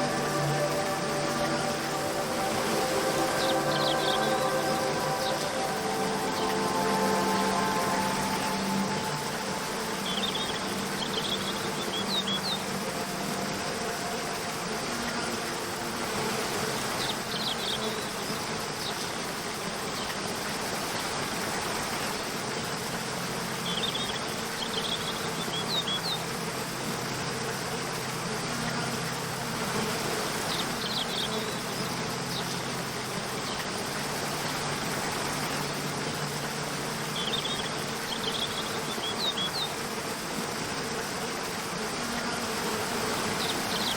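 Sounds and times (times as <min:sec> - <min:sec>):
high chirps: 0:00.0 - 0:14.2
waterfall rushing: 0:00.0 - 0:30.9, 0:31.5 - 0:43.9
soft low music tones: 0:00.0 - 0:43.9.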